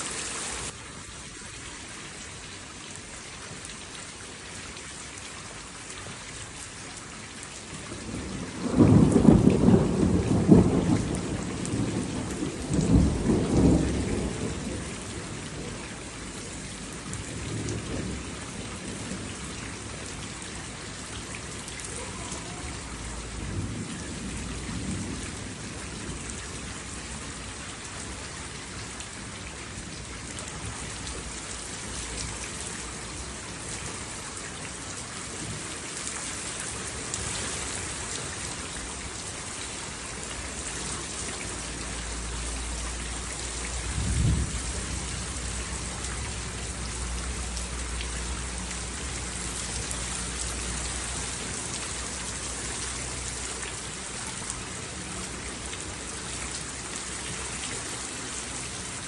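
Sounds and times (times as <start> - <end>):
steady rain: 0.0 - 59.0
thunder rumbling: 8.0 - 20.2, 43.7 - 46.8.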